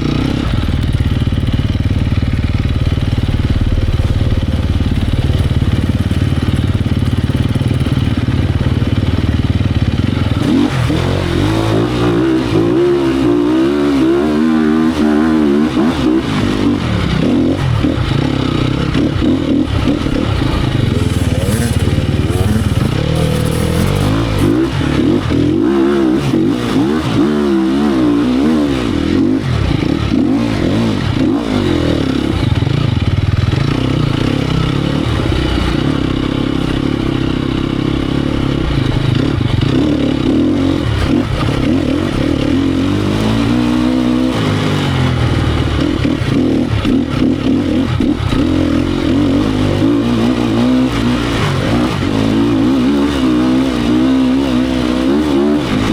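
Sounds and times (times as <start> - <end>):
motorcycle engine revving: 0.0 - 55.9
clattering over rough ground: 19.1 - 25.0.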